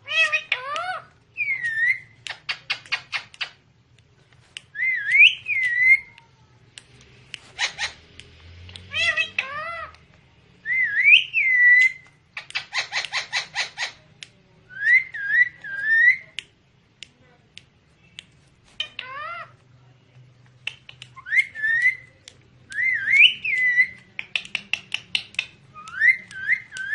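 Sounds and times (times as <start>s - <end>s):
parrot whistling: 10.6s - 13.8s.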